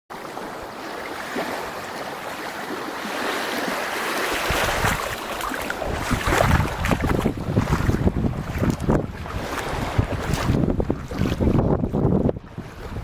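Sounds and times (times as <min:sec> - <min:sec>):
sea waves washing on beach: 0:00.1 - 0:13.0
wind rumble on microphone: 0:04.3 - 0:13.0.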